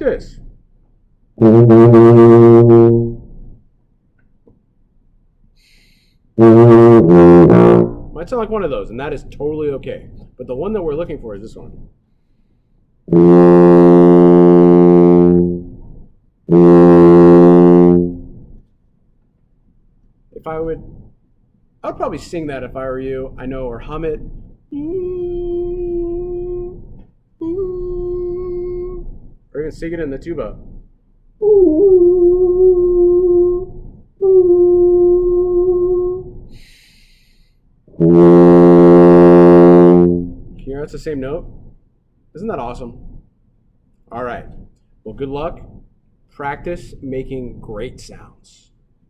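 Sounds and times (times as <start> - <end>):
tuba playing long notes: 1.4 - 3.5, 6.4 - 8.6, 13.1 - 18.6, 23.0 - 30.8, 31.4 - 36.6, 37.9 - 41.3
quick breath: 5.6 - 6.3, 12.0 - 12.9, 36.5 - 37.7
man singing a steady note: 21.9 - 30.8.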